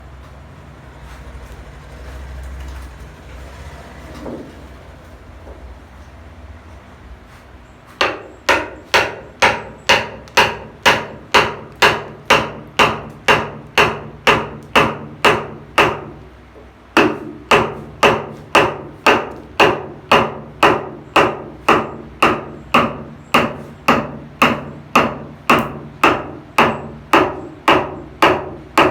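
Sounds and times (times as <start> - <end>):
hammering on wood: 7.9 - 28.9.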